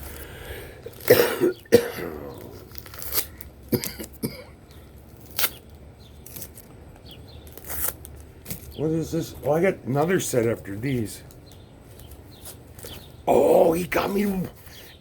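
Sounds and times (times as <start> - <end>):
man coughing: 1.1 - 2.3, 3.7 - 4.6.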